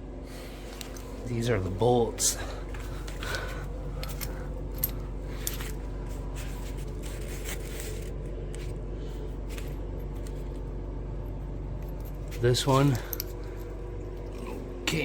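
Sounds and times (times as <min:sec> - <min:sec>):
steady low hum: 0:00.0 - 0:15.0
bolts clicking and rattling: 0:00.7 - 0:05.9.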